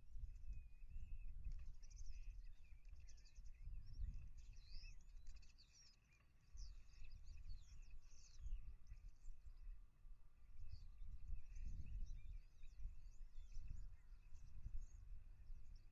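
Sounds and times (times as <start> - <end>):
small birds chirping: 0.1 - 9.8, 10.5 - 15.9.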